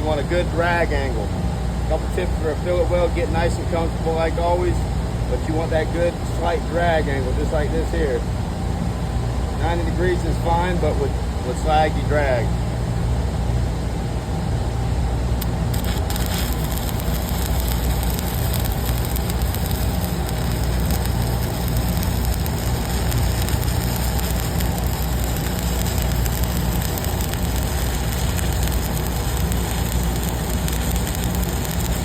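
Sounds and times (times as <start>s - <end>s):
low hum: 12.5s - 32.0s
welding arc crackling and sputtering: 15.3s - 32.0s.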